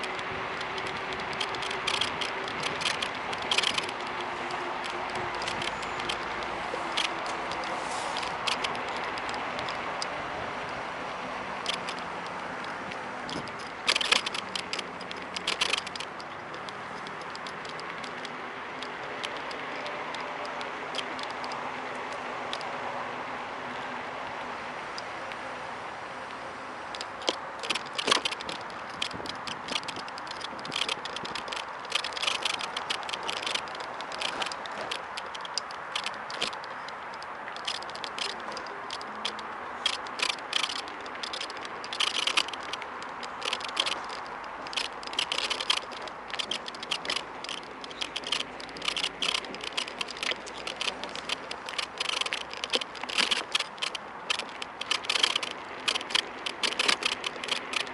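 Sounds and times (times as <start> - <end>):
phone holder rattling and clicking: 0.0 - 10.8, 11.5 - 22.8, 26.9 - 57.9
scooter riding hum: 0.0 - 57.9.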